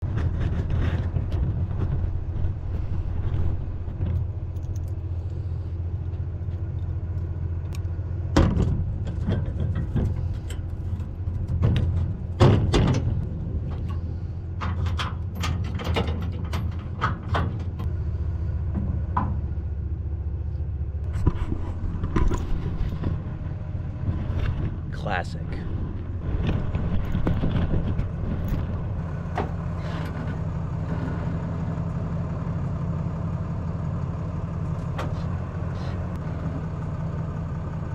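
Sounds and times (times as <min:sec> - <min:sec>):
vehicle engine idling: 0:00.0 - 0:37.9
clicks and rattles: 0:08.5 - 0:17.9.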